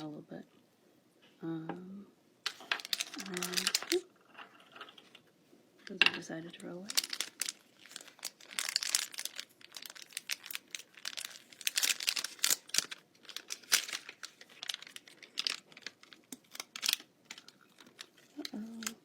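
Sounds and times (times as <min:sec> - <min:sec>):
packaging rustling and crackling: 0:02.5 - 0:05.2, 0:05.8 - 0:19.0.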